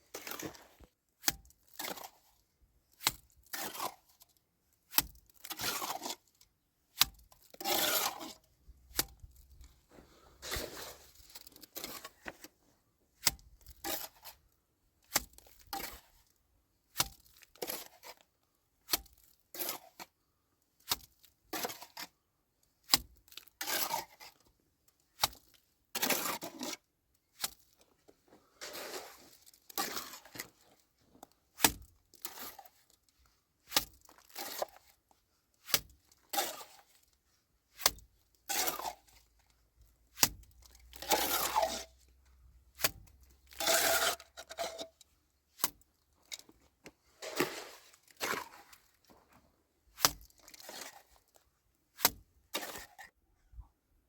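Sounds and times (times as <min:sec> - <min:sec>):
scraping strokes: 0:09.9 - 0:12.4, 0:28.3 - 0:30.8, 0:43.5 - 0:45.0, 0:46.3 - 0:51.2, 0:52.0 - 0:53.1.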